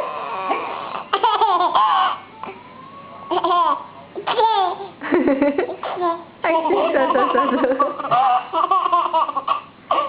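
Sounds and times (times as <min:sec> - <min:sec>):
small child laughing: 0:00.3 - 0:02.2, 0:03.3 - 0:10.0.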